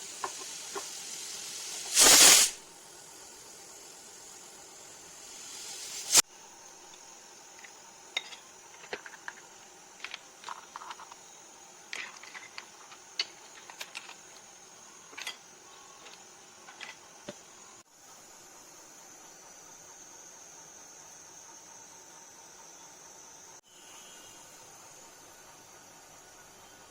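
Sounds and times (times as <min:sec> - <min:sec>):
loud rushing hiss: 0:00.0 - 0:06.2
faint steady hiss: 0:00.0 - 0:19.0
utensils and dishes clinking: 0:15.1 - 0:15.4.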